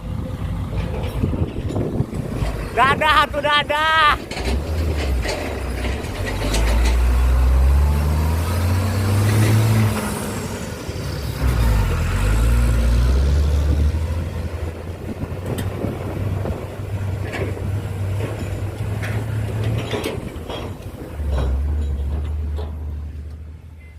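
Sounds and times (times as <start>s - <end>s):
truck engine droning: 0.0s - 23.9s
sharp clicks and knocks: 4.2s - 7.2s.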